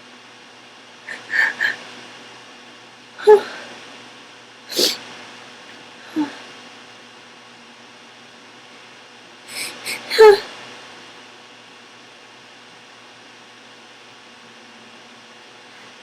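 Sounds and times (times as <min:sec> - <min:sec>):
sharp breaths: 0:04.7 - 0:05.0, 0:09.5 - 0:10.3
woman sneezing: 0:04.7 - 0:05.0, 0:09.6 - 0:10.5.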